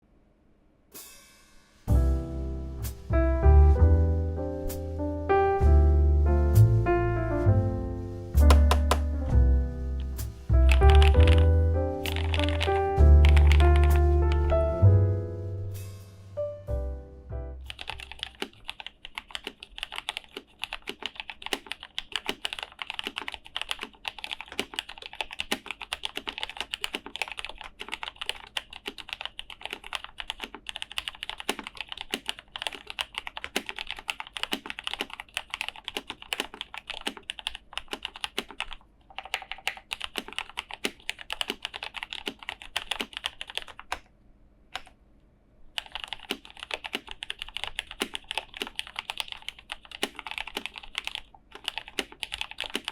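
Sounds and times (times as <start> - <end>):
typing on mechanical keyboard: 8.5 - 9.1, 10.7 - 14.6, 17.7 - 44.1, 45.8 - 52.9.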